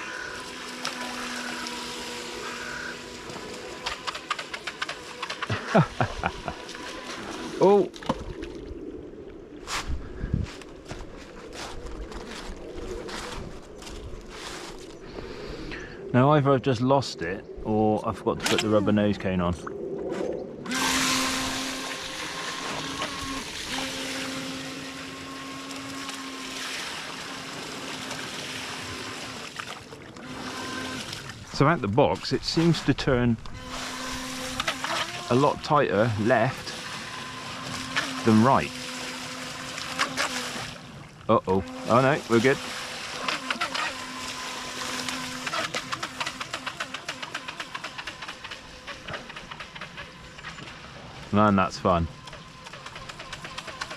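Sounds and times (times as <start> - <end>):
model boat motor whining: 0.0 - 7.9, 20.6 - 53.9
rapid ticks: 52.2 - 53.9.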